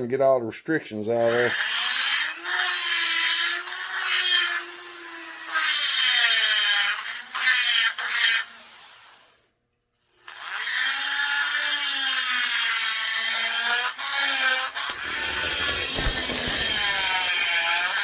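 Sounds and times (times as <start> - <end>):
rotary grinder grinding metal: 1.3 - 4.9, 10.4 - 18.0.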